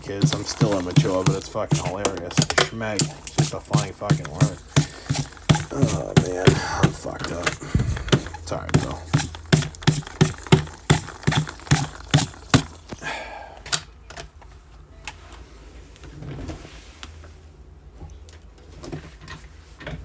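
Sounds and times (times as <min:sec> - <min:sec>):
sharp taps: 0:00.0 - 0:13.0.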